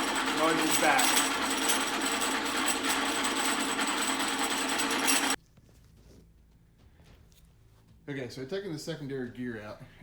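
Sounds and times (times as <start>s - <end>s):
transmission gears rattling: 0.0s - 5.4s.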